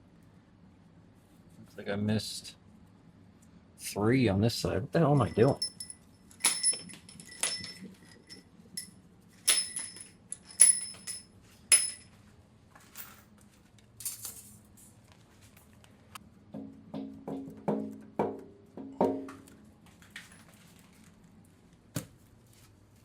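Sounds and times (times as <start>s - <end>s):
metal tools clinking: 5.1s - 12.1s.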